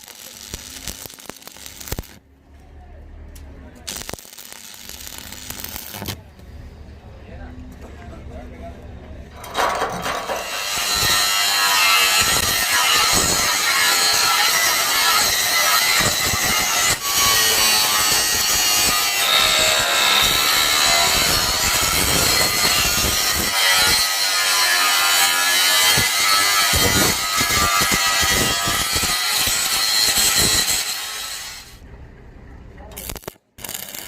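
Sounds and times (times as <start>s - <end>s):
power tool working metal: 9.5s - 31.8s.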